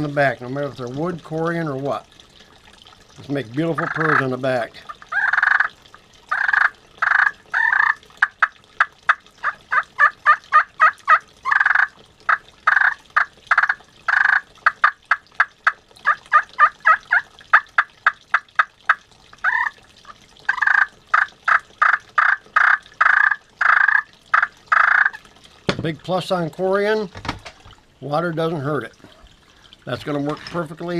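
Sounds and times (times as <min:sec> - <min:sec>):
turkey call yelps and purrs: 0:04.9 - 0:05.7, 0:06.3 - 0:08.5, 0:09.1 - 0:19.8, 0:20.5 - 0:25.2.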